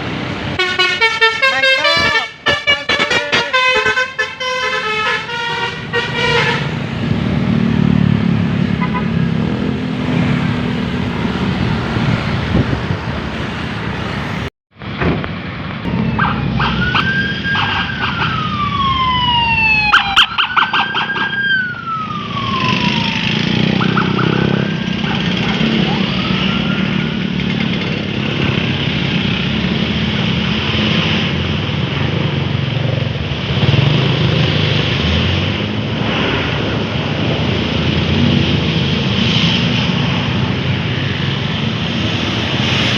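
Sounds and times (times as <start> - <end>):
bus engines and traffic rumble: 0.0 - 42.9
bus horn melody: 0.5 - 6.9, 8.8 - 9.2.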